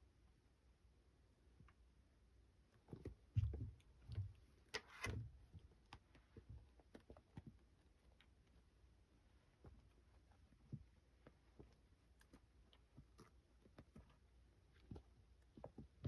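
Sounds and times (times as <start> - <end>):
soft thumps: 2.8 - 4.5.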